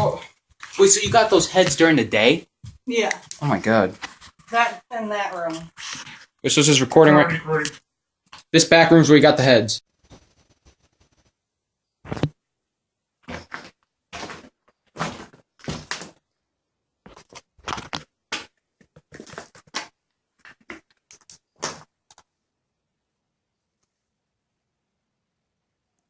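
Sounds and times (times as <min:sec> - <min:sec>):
thumps and knocks: 0:12.0 - 0:12.4, 0:13.3 - 0:16.2, 0:21.6 - 0:21.9.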